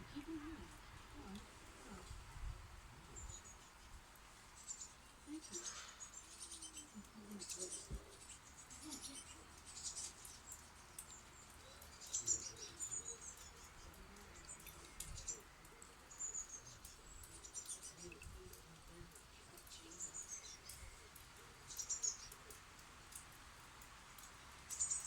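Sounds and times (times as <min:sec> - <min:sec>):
bird chicks chirping: 0:04.6 - 0:18.5.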